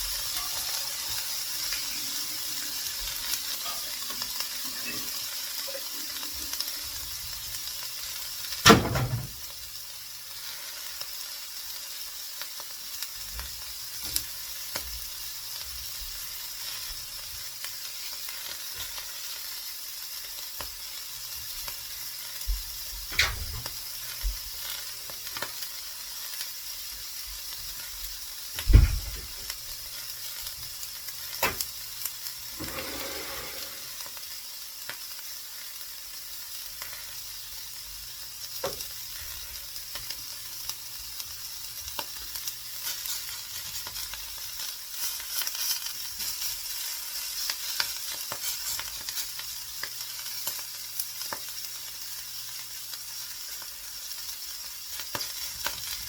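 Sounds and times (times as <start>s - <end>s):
food sizzling in a frying pan: 0.0s - 56.0s
utensil scraping a pan: 32.5s - 34.1s.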